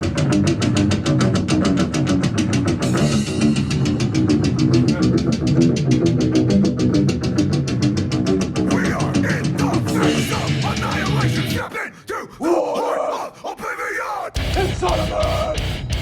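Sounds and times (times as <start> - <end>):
distorted electric guitars: 0.0 - 11.7, 14.4 - 16.0
fast drum beat: 1.7 - 6.4, 8.6 - 11.6, 14.4 - 16.0.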